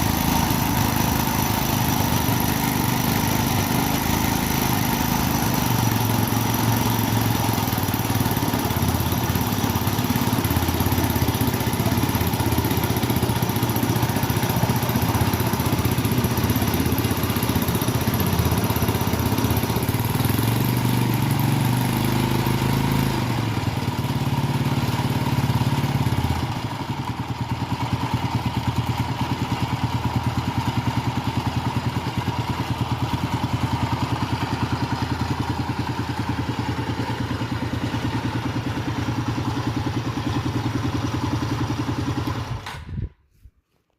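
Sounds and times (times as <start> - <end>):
outboard motor running: 0.0 - 26.7.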